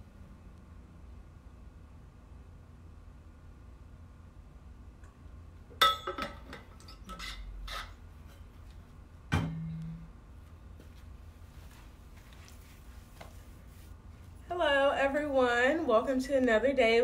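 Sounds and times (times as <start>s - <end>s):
short low hum: 9.0s - 11.5s.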